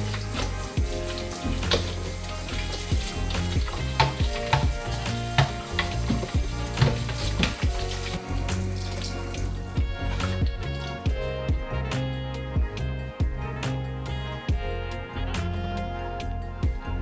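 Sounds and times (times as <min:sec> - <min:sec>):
steady sizzling hiss: 0:00.0 - 0:10.0
background music with percussive beat: 0:00.0 - 0:17.0.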